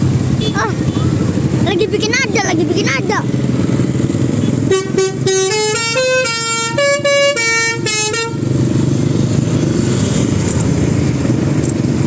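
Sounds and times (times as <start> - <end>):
bus engine running: 0.0 - 12.0
bus horn playing a tune: 4.4 - 8.6.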